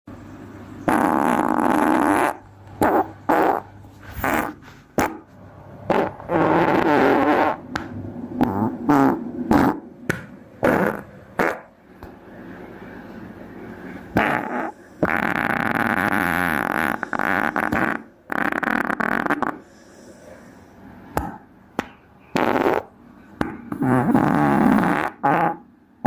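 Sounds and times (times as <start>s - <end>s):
fart sounds: 0.9s - 5.3s, 5.9s - 7.8s, 8.4s - 9.9s, 10.6s - 11.7s, 14.1s - 19.6s, 22.3s - 25.7s.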